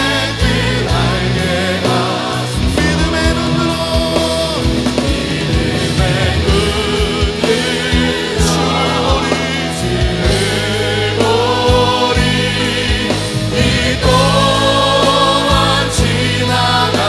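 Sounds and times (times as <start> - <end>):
band with drums and bass: 0.0 - 17.0
choir singing: 0.0 - 17.0.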